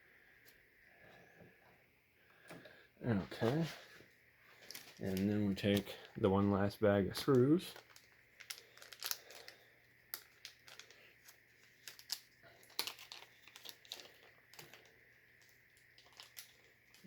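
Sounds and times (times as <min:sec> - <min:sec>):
plastic bag crinkling: 0:04.5 - 0:06.3, 0:07.0 - 0:17.0.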